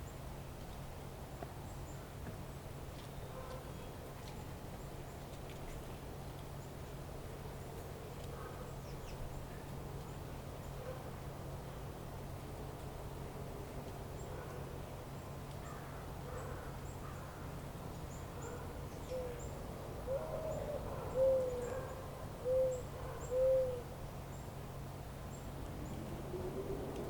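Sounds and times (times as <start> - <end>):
low outdoor hum: 0.0 - 27.0
bird low arching calls: 18.4 - 23.9.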